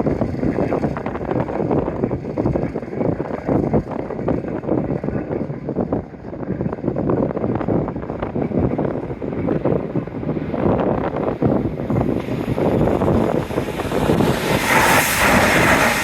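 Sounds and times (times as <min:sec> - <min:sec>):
wind buffeting microphone: 0:00.0 - 0:16.0
train rushing past: 0:09.1 - 0:16.0.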